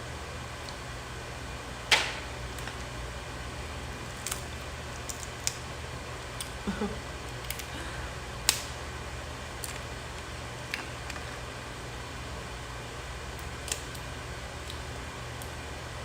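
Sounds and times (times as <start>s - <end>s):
steady low hum: 0.0s - 16.0s
crab shells cracking: 4.0s - 5.7s, 7.2s - 7.8s, 8.4s - 8.8s, 9.6s - 11.3s, 13.3s - 15.6s.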